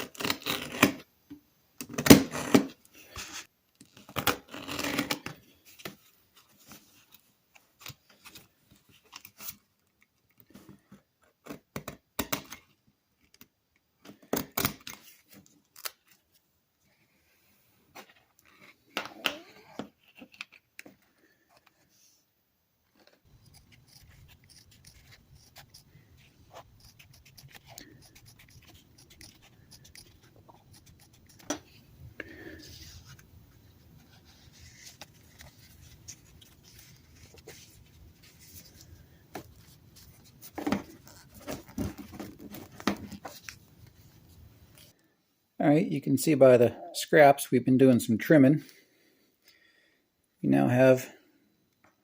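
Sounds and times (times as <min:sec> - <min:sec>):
clicks and handling scrapes: 0:22.9 - 0:45.0
cutting snips: 0:23.4 - 0:25.9.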